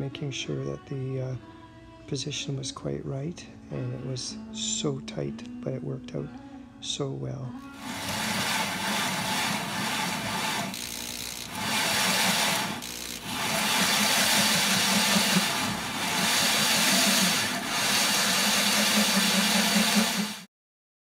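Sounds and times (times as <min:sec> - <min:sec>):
power drill grinding porcelain: 0:07.7 - 0:20.5.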